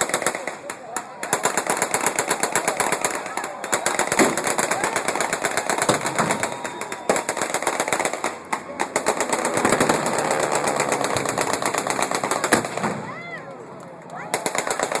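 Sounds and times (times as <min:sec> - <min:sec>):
machine-gun fire: 0:01.2 - 0:13.1.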